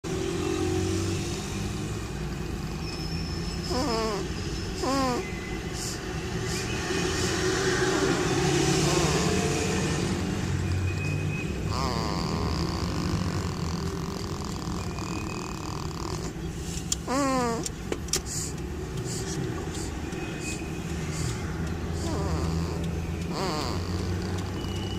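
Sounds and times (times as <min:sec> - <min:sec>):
baby snoring: 0:03.6 - 0:10.6, 0:11.7 - 0:16.4, 0:17.0 - 0:17.7, 0:21.0 - 0:24.8.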